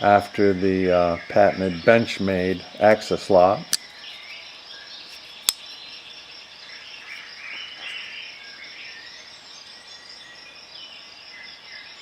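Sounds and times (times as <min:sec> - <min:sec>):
birds chirping: 0:00.0 - 0:10.4
insects trilling: 0:00.0 - 0:12.0
sharp click: 0:05.4 - 0:05.7.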